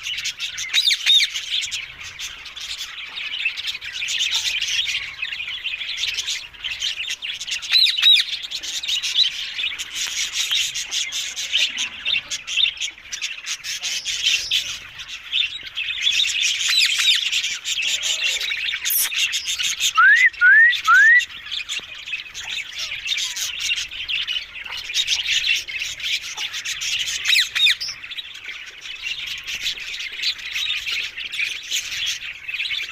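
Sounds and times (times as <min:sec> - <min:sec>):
parrots squawking and chattering: 0:00.0 - 0:32.9
rising whistles: 0:20.0 - 0:21.3.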